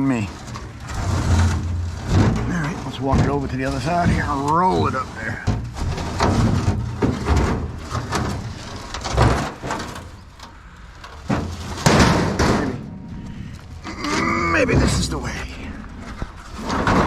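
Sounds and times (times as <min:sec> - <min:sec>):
metal scraping across metal: 0:00.0 - 0:10.5
metal knocks and clunks: 0:00.0 - 0:17.0.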